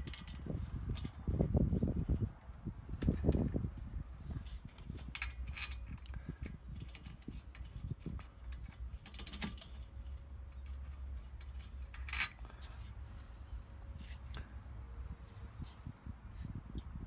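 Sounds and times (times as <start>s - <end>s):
low steady hum: 0.0s - 17.0s
metal parts and tools clattering: 4.6s - 12.9s.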